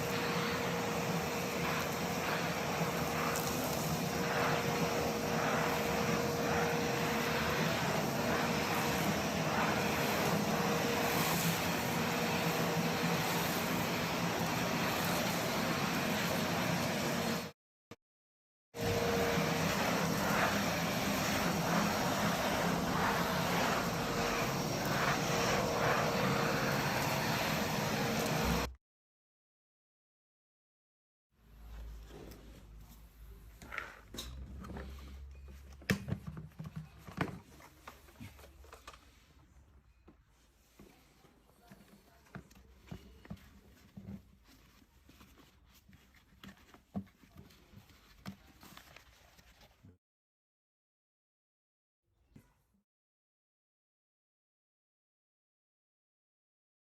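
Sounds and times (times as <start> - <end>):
vacuum cleaner running: 0.0 - 17.6, 18.8 - 28.8.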